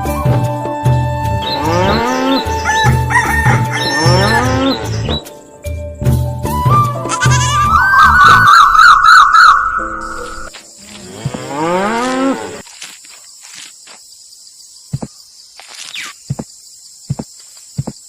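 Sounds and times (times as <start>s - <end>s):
cow mooing: 11.0s - 12.6s.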